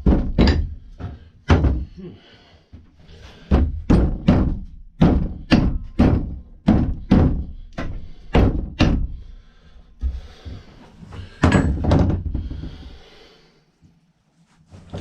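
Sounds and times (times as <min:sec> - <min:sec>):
hammer striking chisel: 0:00.3 - 0:00.8, 0:05.0 - 0:09.0.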